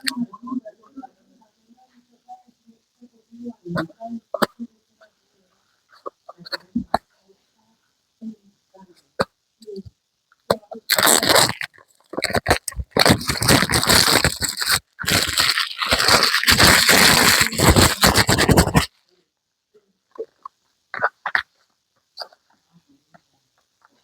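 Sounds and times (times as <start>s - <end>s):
packaging scraping and crackling: 10.9s - 18.9s.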